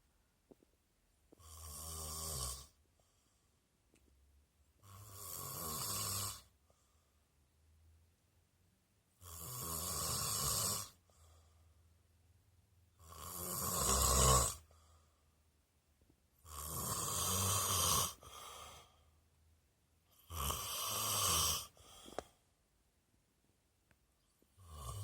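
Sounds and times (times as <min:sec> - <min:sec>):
man snoring: 0:01.4 - 0:02.8, 0:04.8 - 0:06.5, 0:09.2 - 0:11.0, 0:13.0 - 0:14.7, 0:16.4 - 0:18.8, 0:20.2 - 0:21.8, 0:24.6 - 0:25.0.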